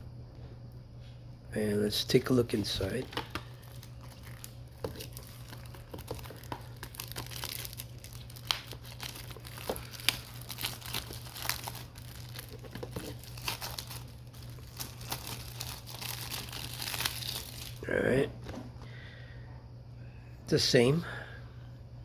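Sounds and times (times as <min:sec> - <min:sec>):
plastic packaging crinkling and tearing: 0:02.5 - 0:17.9.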